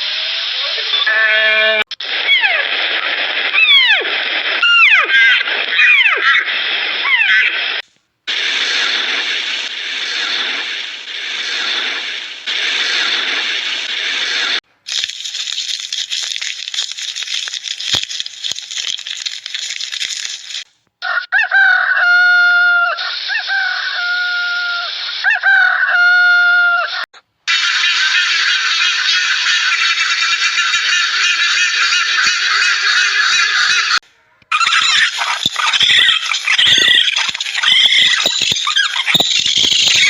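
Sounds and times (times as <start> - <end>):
rooster crowing: 21.0 - 27.0
chicken flock clucking: 27.6 - 34.0.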